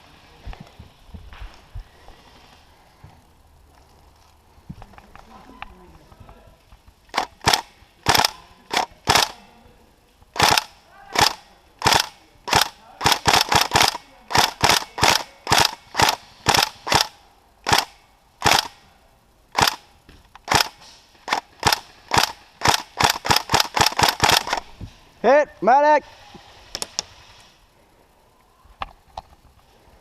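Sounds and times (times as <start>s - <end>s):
airsoft rifle shots cracking: 7.1s - 9.4s, 10.4s - 18.8s, 19.5s - 24.7s.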